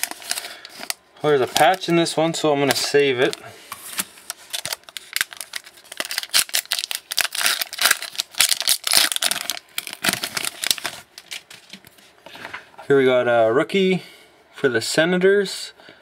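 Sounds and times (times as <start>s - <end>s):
foil wrapper crinkling and tearing: 0.0s - 1.9s, 2.7s - 11.9s
cards rustling: 0.0s - 2.0s, 2.6s - 12.2s.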